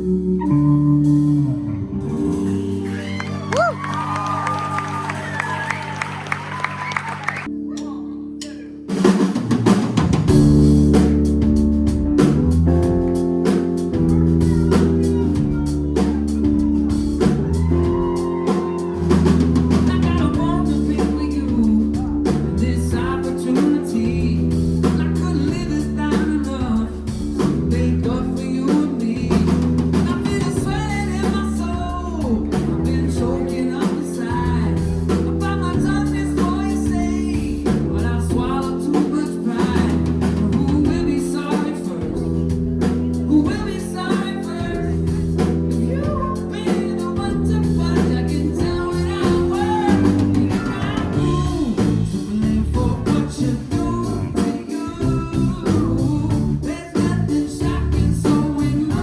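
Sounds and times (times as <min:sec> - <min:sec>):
live band playing: 0:00.0 - 0:59.0
person singing: 0:13.1 - 0:59.0.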